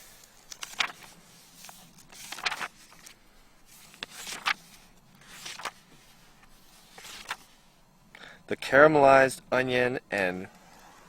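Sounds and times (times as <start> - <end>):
book pages turning: 0.0 - 7.6.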